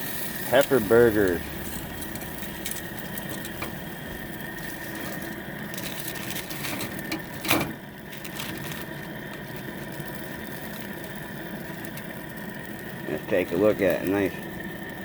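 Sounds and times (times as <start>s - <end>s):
steady low hum: 0.0s - 8.2s.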